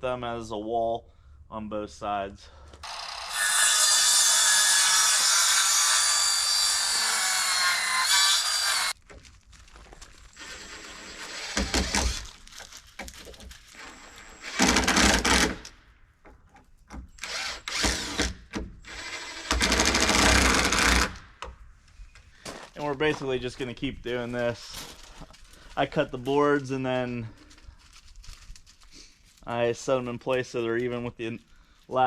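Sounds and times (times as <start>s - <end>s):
power tool whining: 2.8s - 9.0s.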